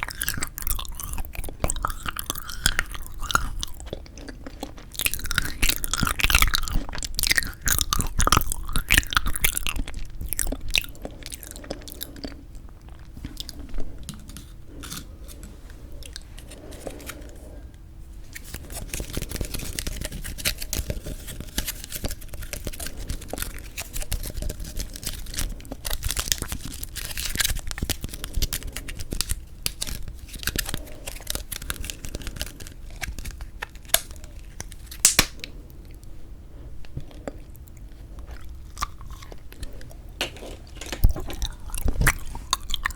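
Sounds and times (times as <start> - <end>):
close chewing mouth sounds: 0.0 - 36.1, 36.8 - 42.9
loud snaps: 35.0 - 35.5.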